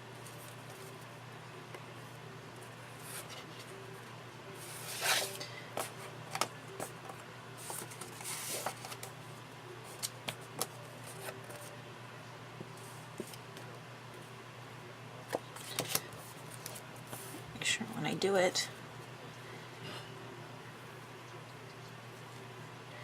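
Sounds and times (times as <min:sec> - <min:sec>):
steady low hum: 0:00.0 - 0:23.0
paper rustling: 0:07.6 - 0:09.1.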